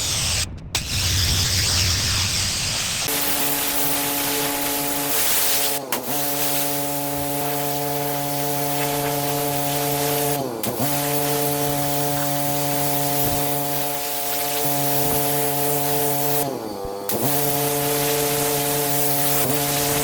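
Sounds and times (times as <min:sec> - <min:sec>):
pressure washer spray hissing: 0:00.0 - 0:20.0.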